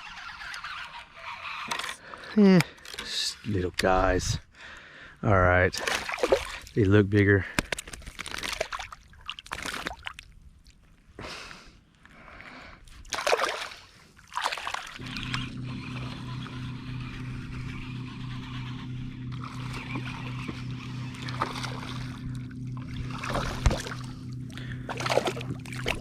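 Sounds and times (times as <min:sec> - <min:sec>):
boat motor humming: 0:00.0 - 0:07.8, 0:14.4 - 0:26.0
water splashes: 0:05.8 - 0:06.8, 0:13.0 - 0:15.1, 0:19.4 - 0:26.0
light water noise: 0:12.8 - 0:16.8, 0:19.3 - 0:26.0.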